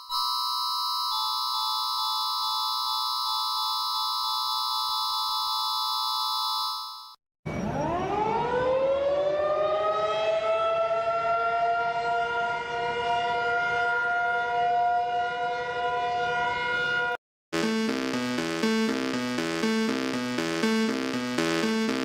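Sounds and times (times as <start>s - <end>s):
civil defense siren winding up: 7.5s - 22.0s
electronic alarm tone: 17.6s - 22.0s.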